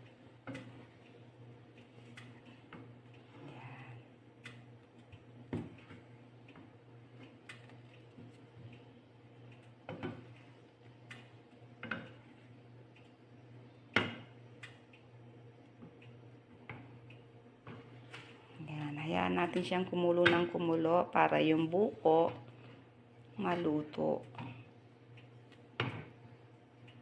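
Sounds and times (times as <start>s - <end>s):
sugar cooking clicks in pan: 11.0s - 12.2s, 13.9s - 15.1s.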